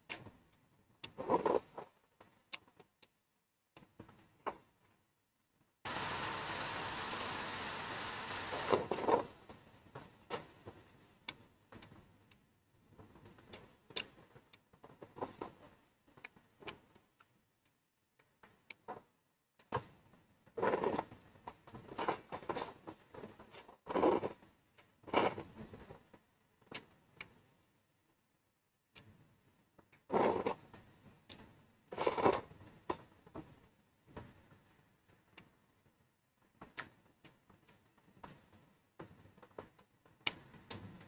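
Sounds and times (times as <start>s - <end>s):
steady hiss: 5.9s - 11.2s.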